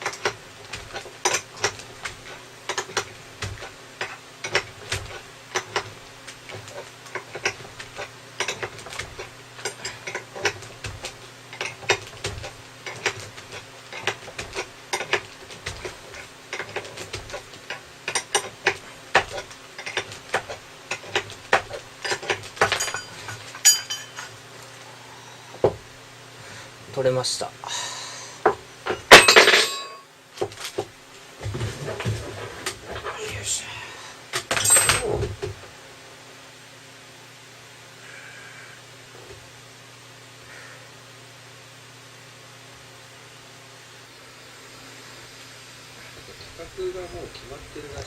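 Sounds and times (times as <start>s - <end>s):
hand tools clinking on metal: 22.0s - 24.3s, 28.9s - 30.0s, 34.5s - 35.2s.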